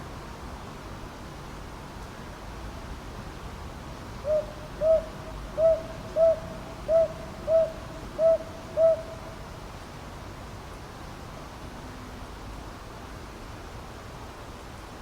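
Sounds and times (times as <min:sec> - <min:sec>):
owl hooting softly: 0:04.2 - 0:09.4.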